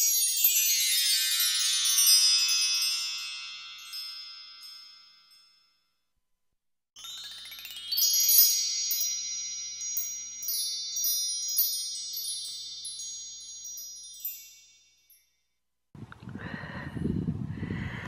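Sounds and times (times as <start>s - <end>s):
chimes ringing: 0.0s - 5.9s, 7.0s - 15.5s.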